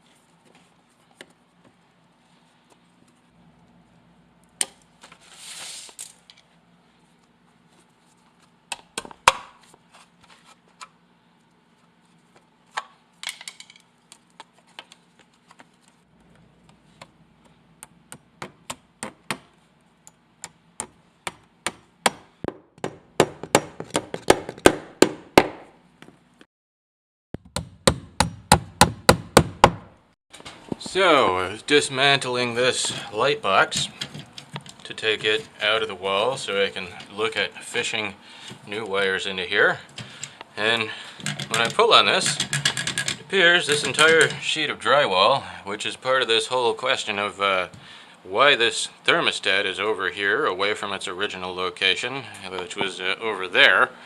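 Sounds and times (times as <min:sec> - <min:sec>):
short scraping hisses: 0:05.2 - 0:06.0
hammering on wood: 0:20.8 - 0:25.7, 0:27.4 - 0:29.9
faint steady hum: 0:30.4 - 0:54.0.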